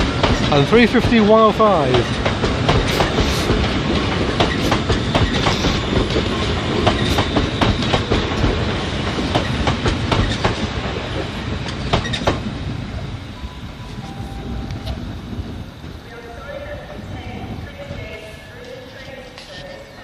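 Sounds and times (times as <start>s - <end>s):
train wheels clicking over rail joints: 0.0s - 13.2s
train rumble: 0.0s - 20.0s.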